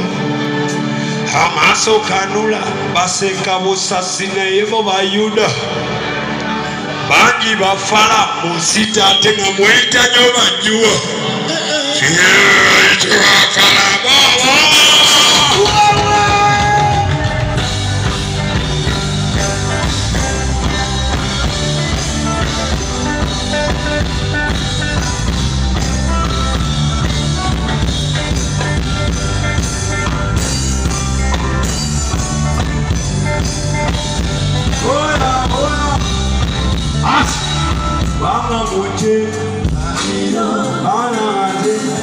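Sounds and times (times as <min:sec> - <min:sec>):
live band playing: 0:00.0 - 0:42.0
person singing: 0:11.3 - 0:19.0, 0:34.6 - 0:42.0.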